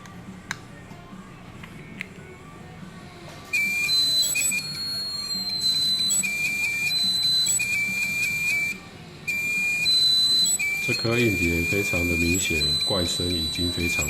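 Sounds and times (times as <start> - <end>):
hard drive whistling squeal: 3.5 - 14.0.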